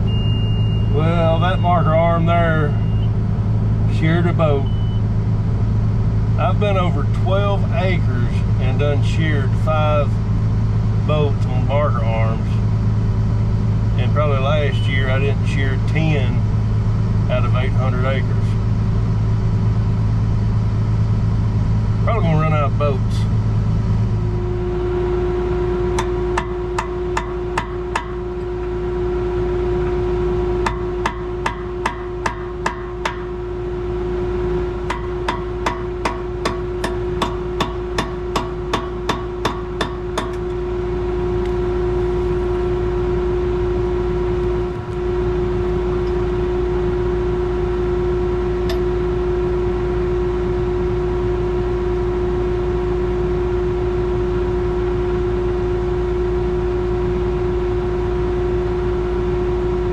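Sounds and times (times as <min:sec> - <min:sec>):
tractor diesel engine running: 0:00.0 - 0:59.9
sharp evenly spaced knocks: 0:26.0 - 0:28.2, 0:30.6 - 0:33.3, 0:34.9 - 0:40.5.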